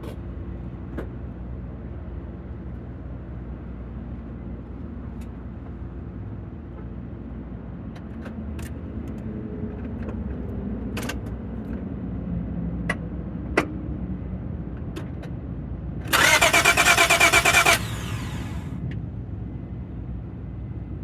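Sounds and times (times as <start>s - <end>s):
starter motor cranking engine: 16.1s - 18.8s.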